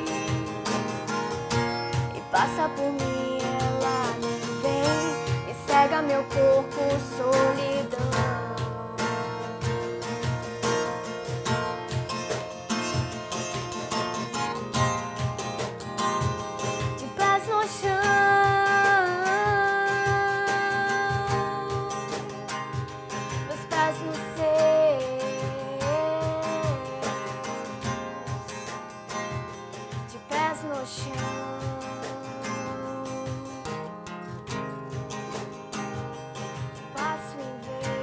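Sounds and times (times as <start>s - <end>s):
woman singing: 0.0s - 10.4s, 16.6s - 28.7s, 29.8s - 35.3s, 36.0s - 38.0s
acoustic guitar: 0.0s - 38.0s
hand percussion: 0.0s - 38.0s.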